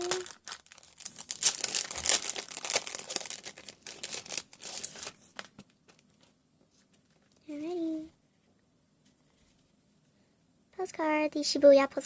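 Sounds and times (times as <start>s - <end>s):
packaging crinkling and tearing: 0.0s - 6.2s.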